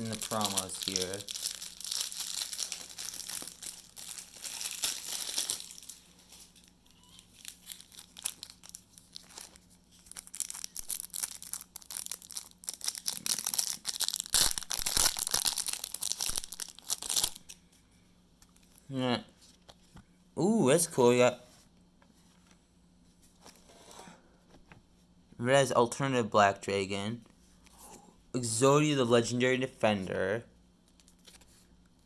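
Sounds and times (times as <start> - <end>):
foil pack crinkling and tearing: 0.0 - 17.6.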